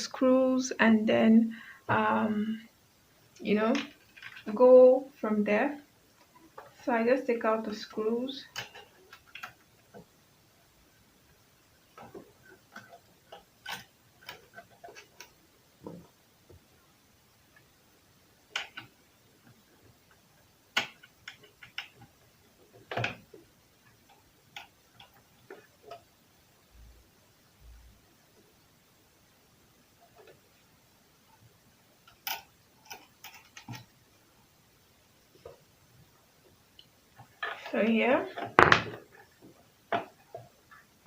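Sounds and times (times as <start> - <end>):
screws and plate handled: 3.7 - 4.5, 8.4 - 10.1, 11.9 - 16.1, 32.1 - 33.9.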